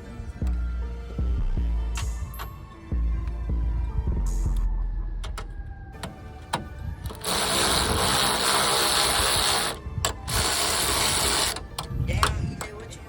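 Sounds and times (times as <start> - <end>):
tool clicks and knocks: 5.2 - 7.5, 11.5 - 12.8
power wrench rattling: 5.3 - 12.6.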